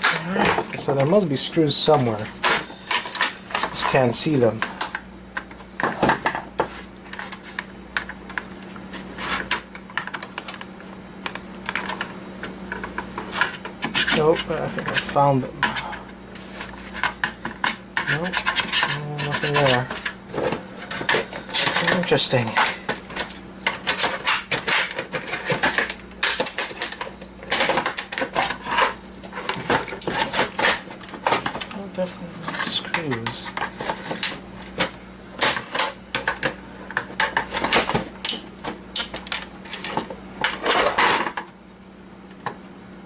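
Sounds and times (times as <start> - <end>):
faint steady hum: 0.0 - 43.0.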